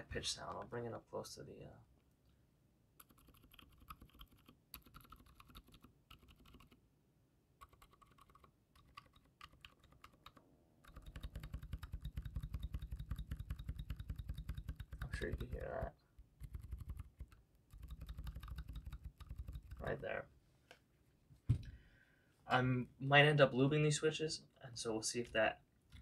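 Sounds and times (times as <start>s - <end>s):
typing on mechanical keyboard: 3.0s - 6.8s, 7.6s - 19.8s.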